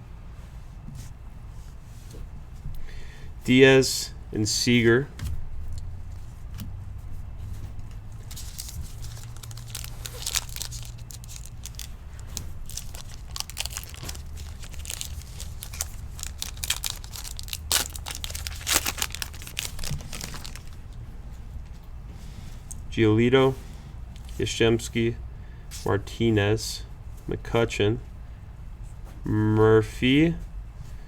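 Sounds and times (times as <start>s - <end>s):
foil wrapper tearing and crinkling: 8.2s - 20.9s.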